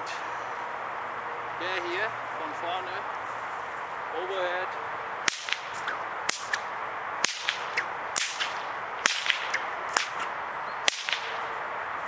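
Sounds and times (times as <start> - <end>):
bullwhip cracking: 5.3 - 11.6
faint whip snaps: 5.3 - 11.6.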